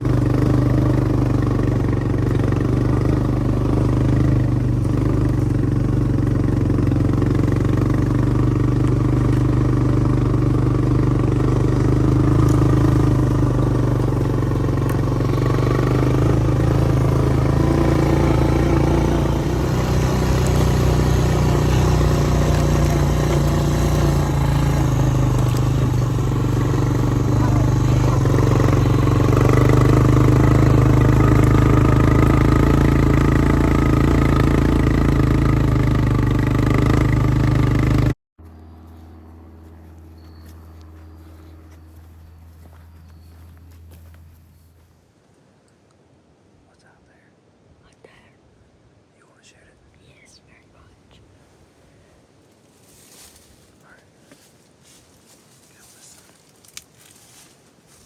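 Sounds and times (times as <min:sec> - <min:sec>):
vehicle engine running: 0:00.0 - 0:45.0, 0:52.7 - 0:58.0.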